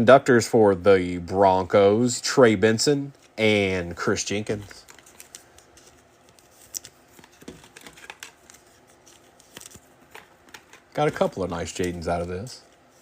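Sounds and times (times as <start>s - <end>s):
trading cards and foil rustling: 3.1s - 13.0s.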